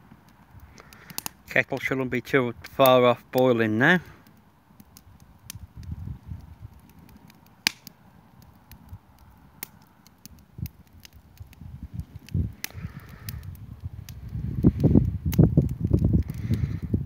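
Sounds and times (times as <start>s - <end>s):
campfire crackling and popping: 0.0s - 17.0s.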